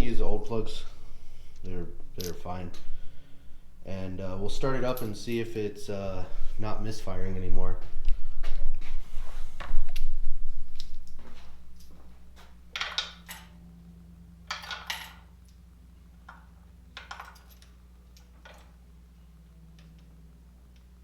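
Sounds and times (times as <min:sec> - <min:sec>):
low rumble: 0:00.0 - 0:12.8
faint steady hum: 0:00.0 - 0:21.0.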